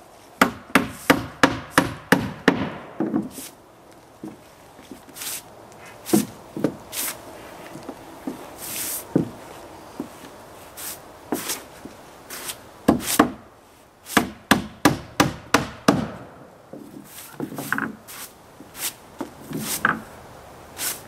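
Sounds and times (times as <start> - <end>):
hammer striking wood: 0.4 - 3.4, 12.9 - 13.4, 14.2 - 16.8.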